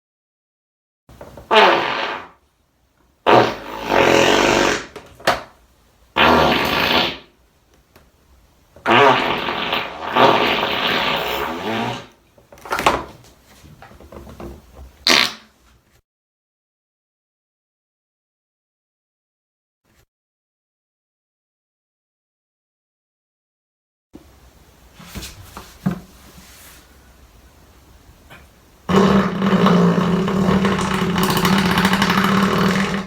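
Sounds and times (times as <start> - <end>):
fart sound effects: 1.4 - 2.4, 3.3 - 5.0, 6.2 - 7.3, 8.8 - 12.2, 15.0 - 15.5, 28.9 - 33.0.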